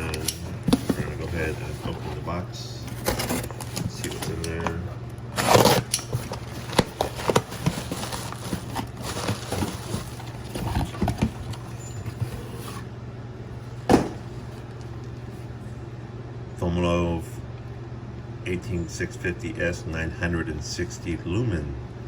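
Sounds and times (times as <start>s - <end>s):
cardboard box rustling and clicking: 0.0s - 12.9s.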